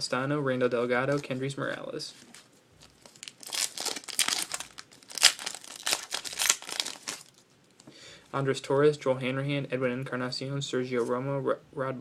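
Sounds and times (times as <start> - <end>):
wrapper tearing and crinkling: 2.8 - 7.5.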